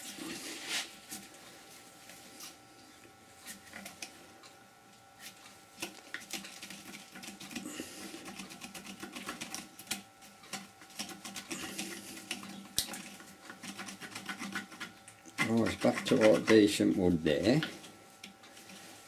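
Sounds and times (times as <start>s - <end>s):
turning tool scratchy clicks: 12.3s - 17.0s.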